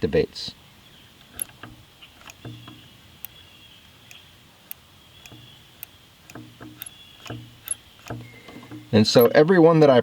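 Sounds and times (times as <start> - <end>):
micro switch clicking: 1.2 - 8.9.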